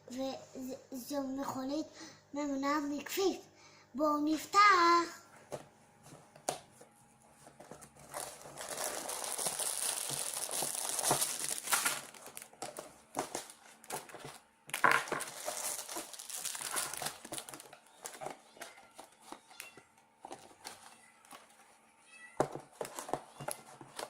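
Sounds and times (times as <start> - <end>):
cardboard and packaging crinkling: 7.3 - 21.7, 22.4 - 24.0.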